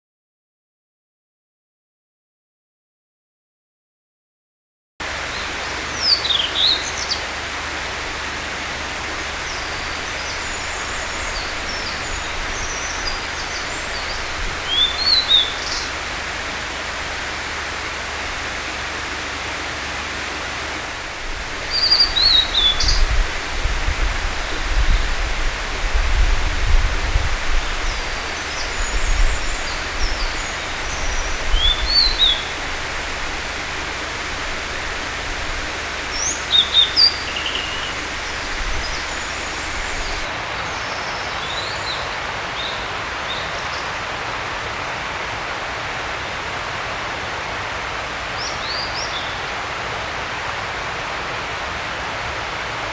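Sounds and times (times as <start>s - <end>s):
bird singing whistled notes: 5.3s - 7.3s, 9.3s - 16.0s, 21.6s - 23.3s, 27.6s - 40.3s.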